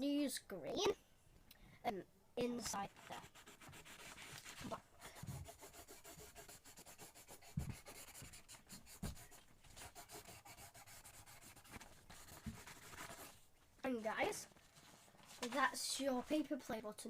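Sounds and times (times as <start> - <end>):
colouring strokes on paper: 2.6 - 13.4.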